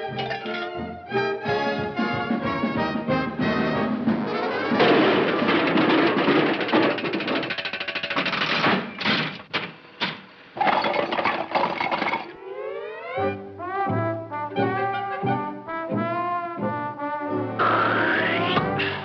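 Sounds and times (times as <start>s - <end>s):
brass band music: 0.0s - 4.8s, 13.3s - 19.0s
orchestral music: 0.0s - 5.0s, 12.4s - 19.0s
cartoon clattering commotion: 4.6s - 12.3s.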